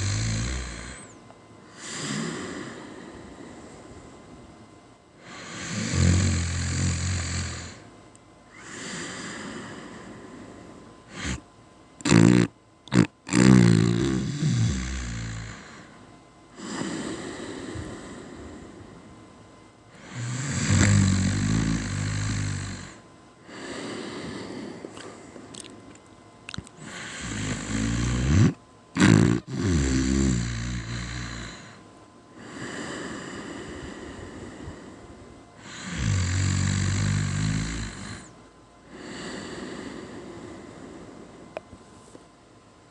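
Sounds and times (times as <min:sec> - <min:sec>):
loud snoring: 0:00.0 - 0:01.1, 0:01.8 - 0:03.0, 0:05.2 - 0:07.8, 0:11.1 - 0:11.4, 0:12.0 - 0:15.9, 0:20.0 - 0:24.5, 0:26.8 - 0:31.8, 0:35.6 - 0:38.3
soft breaths: 0:00.6 - 0:04.4, 0:08.5 - 0:11.4, 0:15.4 - 0:19.2, 0:22.9 - 0:25.8, 0:31.4 - 0:36.1, 0:37.9 - 0:42.4.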